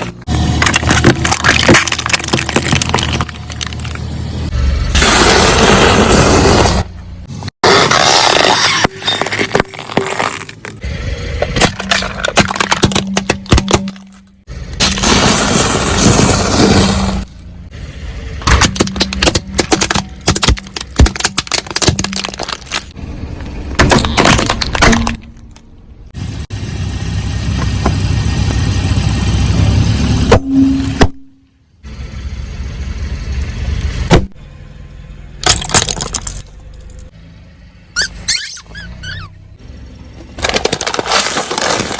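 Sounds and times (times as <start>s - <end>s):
objects crunching under car tyres: 0.0s - 17.5s, 18.4s - 26.1s, 35.4s - 37.2s, 40.1s - 41.9s.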